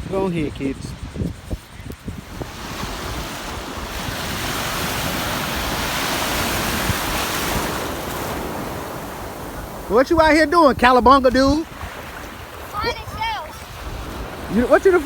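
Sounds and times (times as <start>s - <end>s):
wind on microphone: 0.0s - 15.0s
ocean wave washing in: 2.2s - 10.7s.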